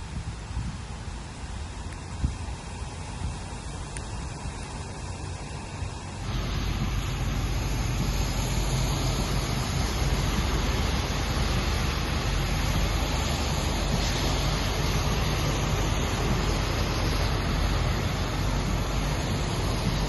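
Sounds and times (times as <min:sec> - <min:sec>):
heavy rain pouring: 0:00.0 - 0:20.0
low rumble: 0:06.2 - 0:20.0.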